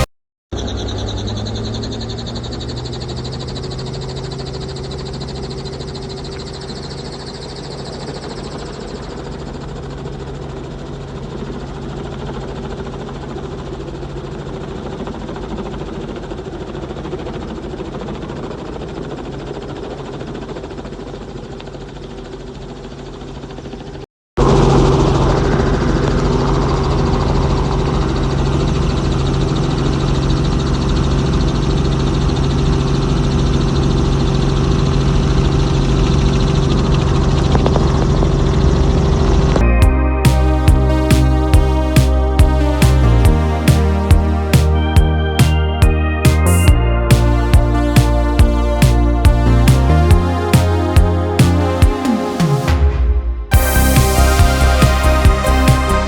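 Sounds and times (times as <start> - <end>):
vehicle engine and cabin noise: 24.4 - 56.0.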